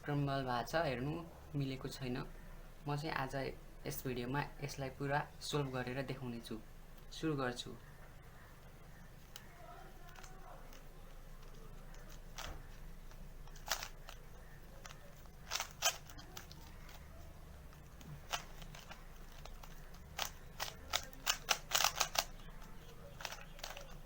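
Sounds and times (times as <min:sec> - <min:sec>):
faint steady low hum: 0:00.0 - 0:24.0
puzzle cube layers clicking: 0:09.2 - 0:24.0.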